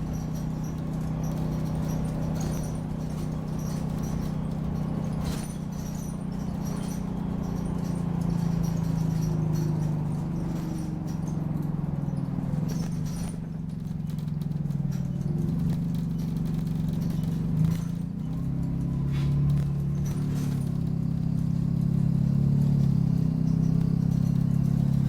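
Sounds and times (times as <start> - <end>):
bus engine droning: 0.0 - 25.0
high squeaks from bus: 0.0 - 25.0.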